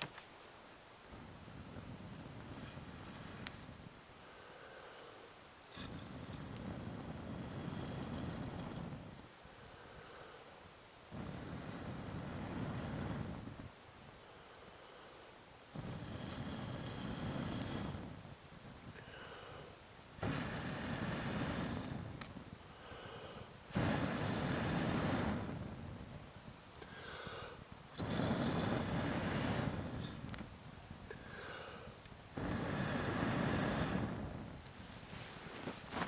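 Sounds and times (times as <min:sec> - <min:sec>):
wind buffeting microphone: 0:01.1 - 0:04.0, 0:05.8 - 0:09.2, 0:11.1 - 0:13.8, 0:23.7 - 0:26.7, 0:27.6 - 0:31.1, 0:32.1 - 0:36.0
quiet in-breaths: 0:01.1 - 0:36.0
person exhaling forcefully: 0:26.8 - 0:30.2, 0:31.1 - 0:34.2.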